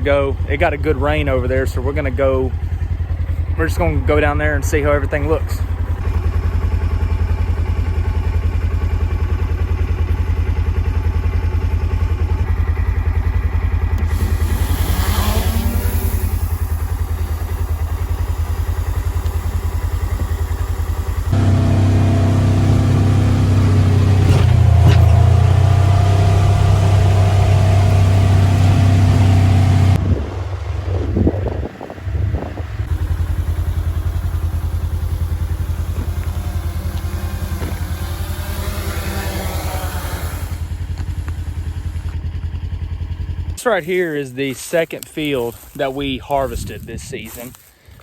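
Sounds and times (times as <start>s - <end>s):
vehicle engine rumbling: 0.0s - 48.0s
steady hums: 14.0s - 42.2s.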